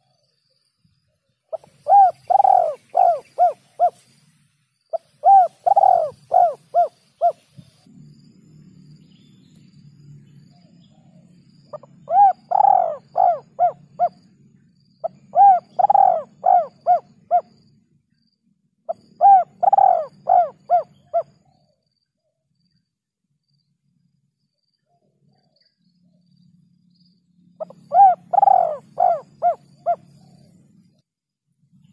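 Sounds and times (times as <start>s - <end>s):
faint low hum: 0.0s - 31.9s
dove cooing: 1.5s - 4.1s, 4.9s - 7.9s, 11.7s - 14.2s, 15.0s - 17.6s, 18.9s - 21.6s, 27.6s - 30.6s.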